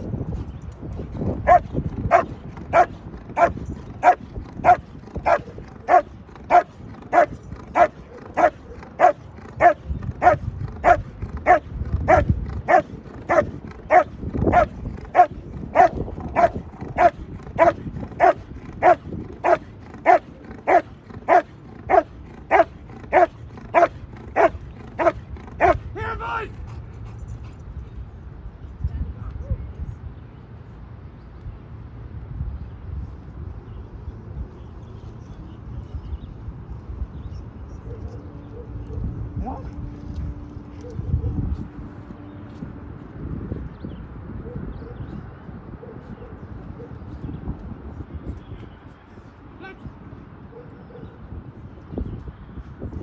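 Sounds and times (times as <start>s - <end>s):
dog barking: 1.4s - 25.8s, 50.5s - 51.2s.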